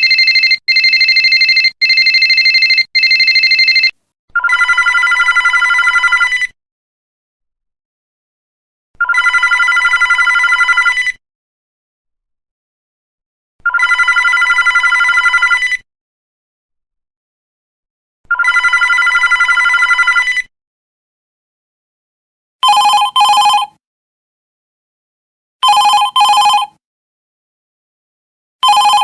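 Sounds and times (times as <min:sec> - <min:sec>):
low trilling telephone ring: 0:00.0 - 0:03.9, 0:22.6 - 0:23.7, 0:25.6 - 0:26.7, 0:28.6 - 0:29.0
high warbling telephone ring: 0:25.6 - 0:26.7.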